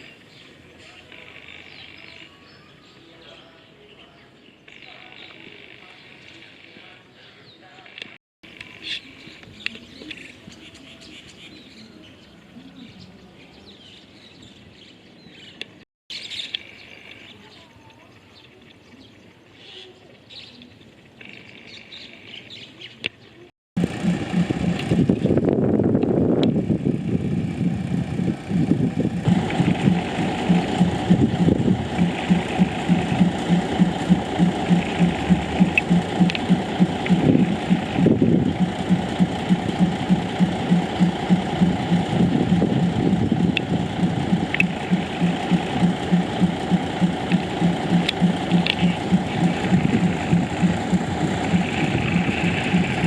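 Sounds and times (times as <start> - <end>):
birds chirping: 0.0 - 25.5, 28.4 - 53.0
diesel train engine throbbing: 23.8 - 53.0.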